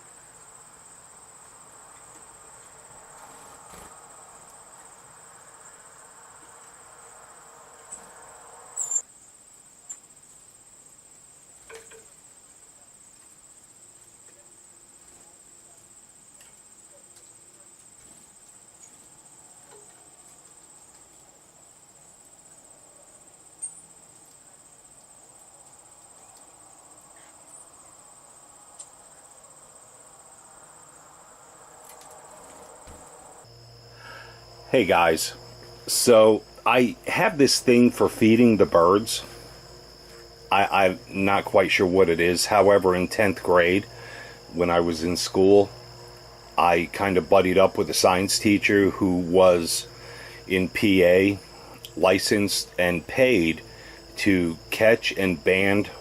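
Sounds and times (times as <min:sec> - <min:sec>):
insects chirring: 0:00.0 - 0:56.0
faint rushing noise: 0:01.5 - 0:08.8, 0:30.0 - 0:56.0.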